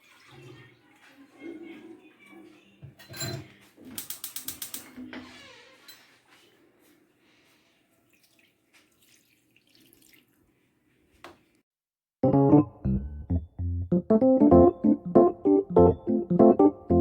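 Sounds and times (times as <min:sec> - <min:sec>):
liquid pouring into a pan: 0:08.1 - 0:10.5.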